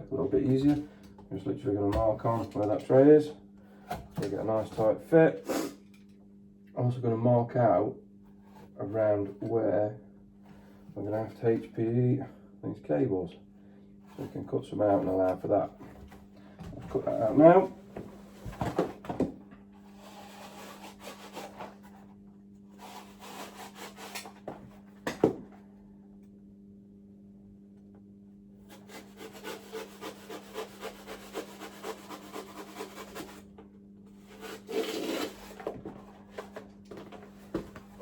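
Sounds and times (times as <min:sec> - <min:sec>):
blade rasping through insulation: 0:19.9 - 0:21.9, 0:22.7 - 0:24.5, 0:28.7 - 0:33.5, 0:34.3 - 0:35.9.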